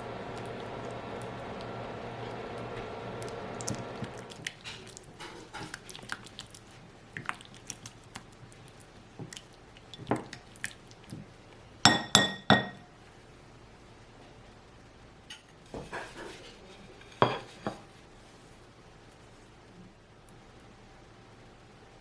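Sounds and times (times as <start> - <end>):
steady hum: 0.0 - 4.4
dishware clicking and tapping: 11.9 - 12.8
utensil clinking on glass dish: 11.9 - 12.8.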